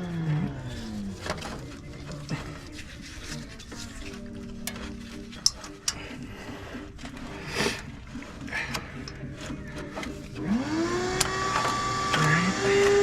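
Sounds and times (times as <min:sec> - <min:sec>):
motor whining: 0:09.9 - 0:13.0.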